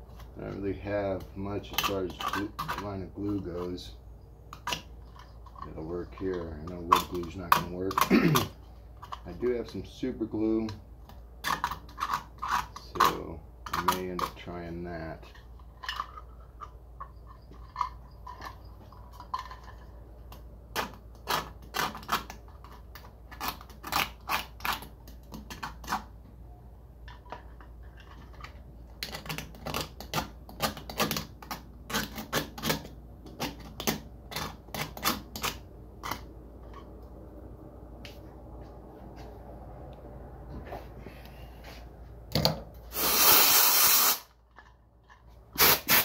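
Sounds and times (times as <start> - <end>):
small hard parts clicking: 10.6 - 26.1, 27.0 - 37.1.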